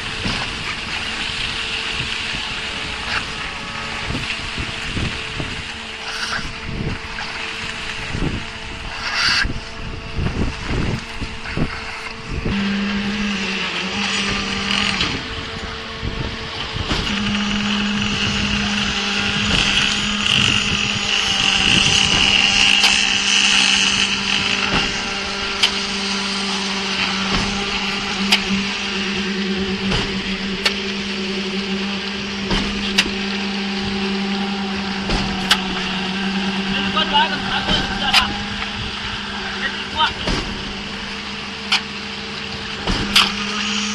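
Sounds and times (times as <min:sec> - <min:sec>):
concrete pump drone: 0:00.0 - 0:43.9
sharp knocks: 0:23.7 - 0:25.8, 0:27.1 - 0:28.6, 0:40.2 - 0:40.7, 0:42.8 - 0:43.5.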